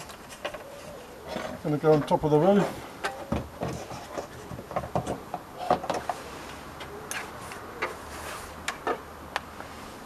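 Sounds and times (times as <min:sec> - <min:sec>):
handling clicks and knocks: 0:00.0 - 0:06.2.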